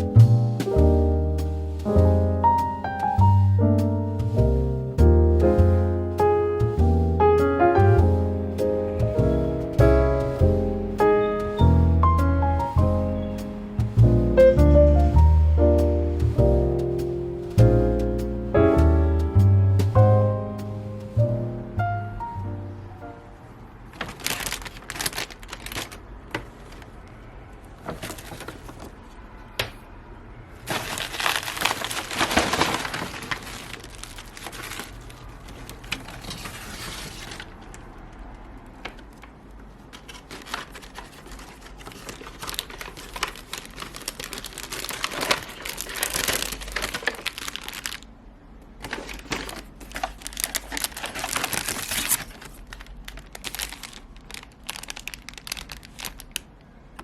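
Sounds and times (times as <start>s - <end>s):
packaging crinkling and rustling: 23.9s - 29.7s, 30.6s - 57.0s.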